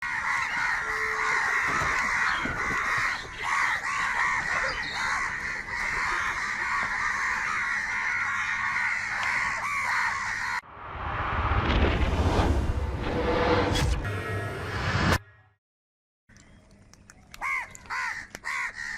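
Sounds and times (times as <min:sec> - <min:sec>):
crows cawing: 0:00.0 - 0:10.6, 0:17.4 - 0:18.9.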